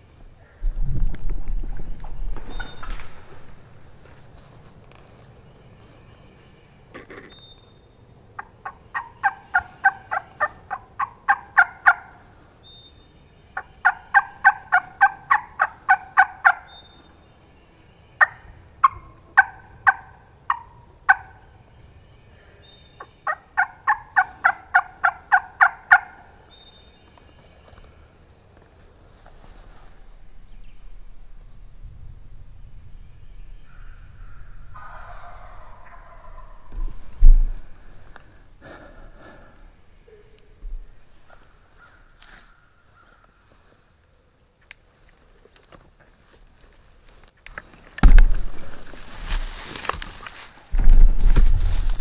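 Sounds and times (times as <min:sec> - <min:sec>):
faint high bird chirps: 0:01.5 - 0:03.0, 0:05.6 - 0:07.9, 0:25.6 - 0:27.9
turkey yelping: 0:08.4 - 0:12.1, 0:13.6 - 0:16.8, 0:18.2 - 0:21.4, 0:23.2 - 0:26.3, 0:34.7 - 0:36.7.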